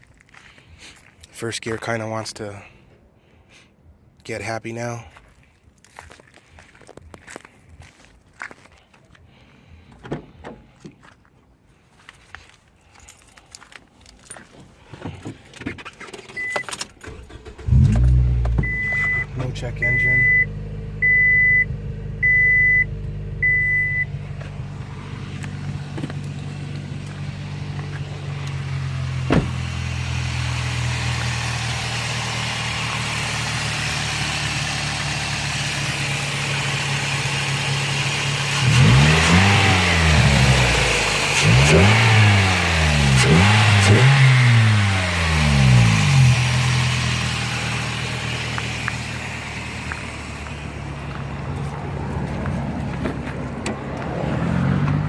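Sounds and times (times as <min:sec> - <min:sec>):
car engine idling and revving: 0:13.1 - 0:55.0
short beeps: 0:16.4 - 0:16.7, 0:18.6 - 0:24.2.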